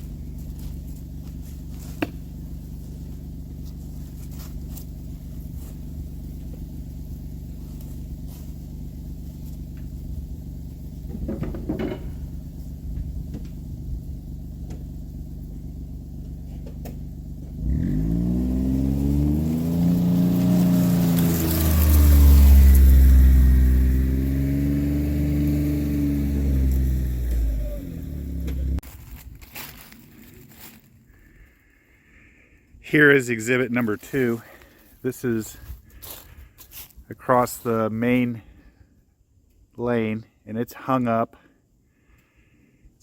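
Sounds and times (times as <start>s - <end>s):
vehicle engine running: 0.0s - 38.7s.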